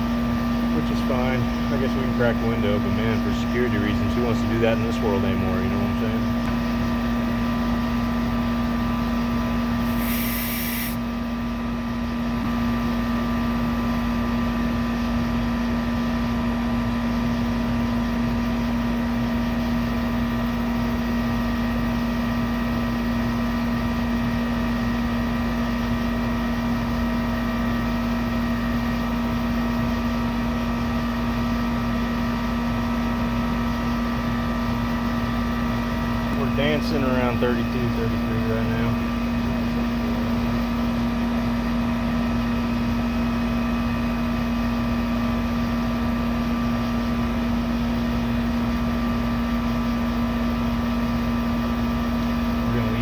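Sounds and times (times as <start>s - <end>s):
air conditioner humming: 0.0s - 7.2s, 9.6s - 11.0s, 33.2s - 41.5s, 52.4s - 53.0s
short hiss: 9.8s - 11.0s.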